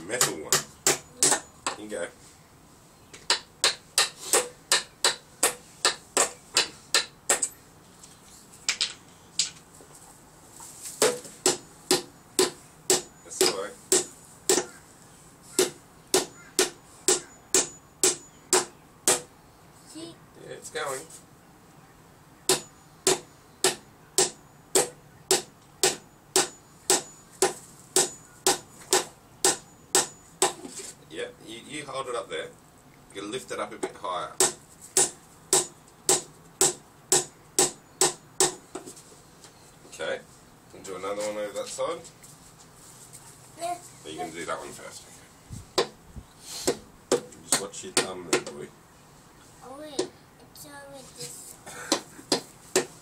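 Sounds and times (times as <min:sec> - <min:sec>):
hammer driving nail into wood: 0:03.3 - 0:07.5, 0:22.5 - 0:30.6, 0:34.4 - 0:38.6, 0:46.6 - 0:48.5.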